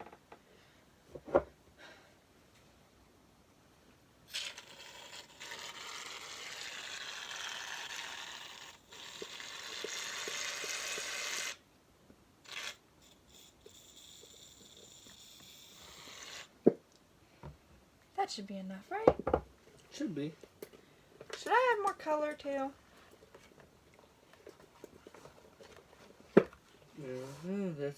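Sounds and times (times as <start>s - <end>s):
aerosol can hissing: 4.3s - 11.6s, 12.4s - 16.5s.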